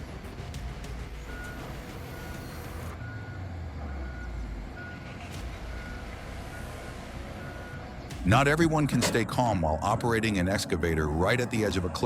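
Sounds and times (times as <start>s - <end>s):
diesel engine running: 0.0s - 12.0s
reversing alarm beeping: 1.1s - 9.1s.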